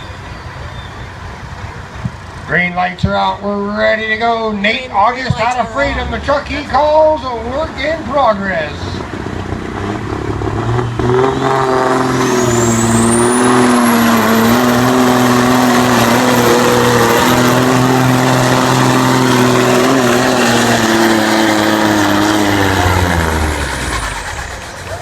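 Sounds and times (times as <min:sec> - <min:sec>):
truck diesel engine under load: 0:00.0 - 0:25.0
high whine: 0:09.9 - 0:25.0.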